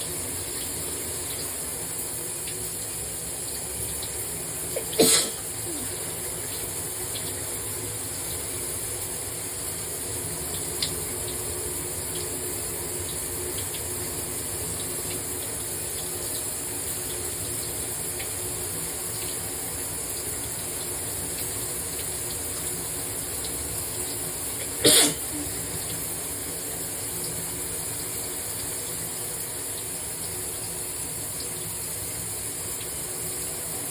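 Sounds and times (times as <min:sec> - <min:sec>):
shower spray running: 0:00.0 - 0:33.9
person sneezing: 0:04.8 - 0:06.0, 0:24.8 - 0:25.6.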